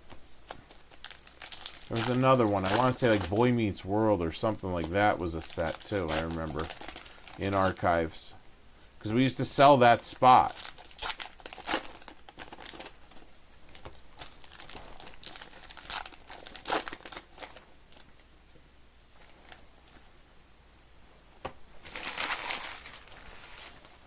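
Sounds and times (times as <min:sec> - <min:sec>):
wrappers crinkling and tearing: 0:00.5 - 0:03.8, 0:04.4 - 0:08.0, 0:09.8 - 0:18.2, 0:21.8 - 0:24.0.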